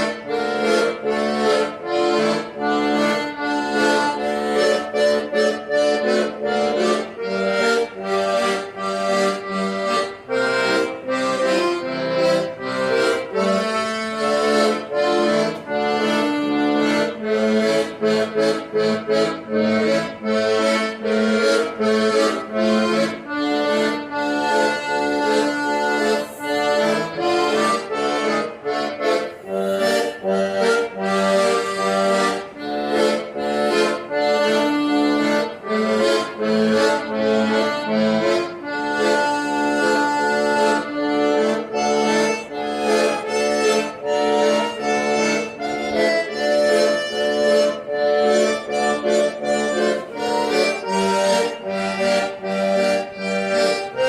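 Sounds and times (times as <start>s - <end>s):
accordion playing lively tune: 0.0s - 54.0s.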